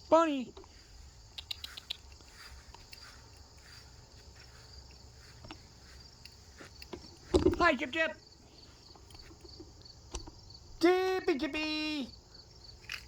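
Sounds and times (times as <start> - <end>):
insects chirring: 0.0 - 13.0
small clicks: 1.3 - 3.5, 12.8 - 13.0.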